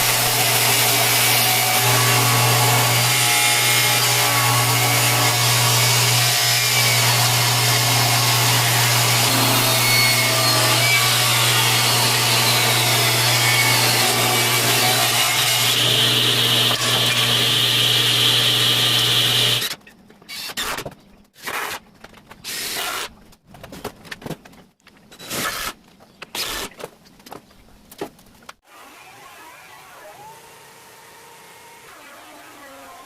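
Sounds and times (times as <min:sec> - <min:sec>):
band sawmill sawing wood: 0:00.0 - 0:19.7.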